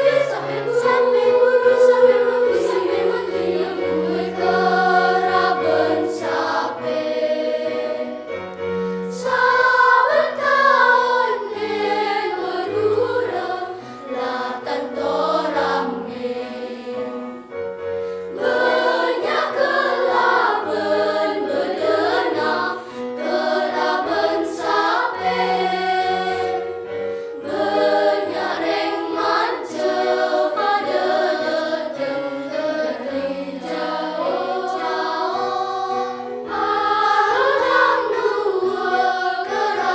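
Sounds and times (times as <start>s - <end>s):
children's choir singing: 0.0s - 39.9s.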